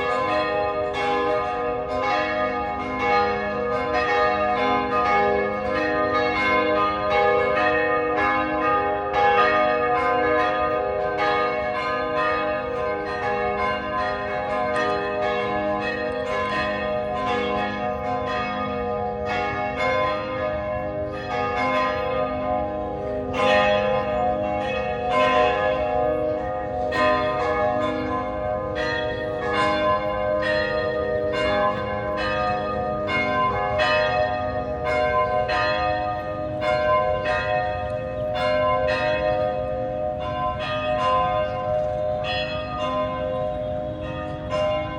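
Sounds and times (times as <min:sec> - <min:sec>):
church bells pealing: 0:00.0 - 0:44.9.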